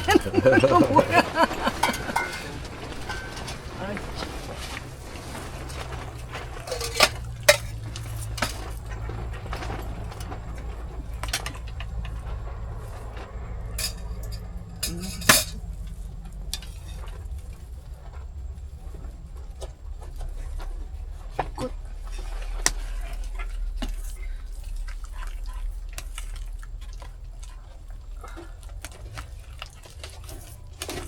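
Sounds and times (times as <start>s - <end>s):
utensils clinking against dishes: 0.0s - 17.3s.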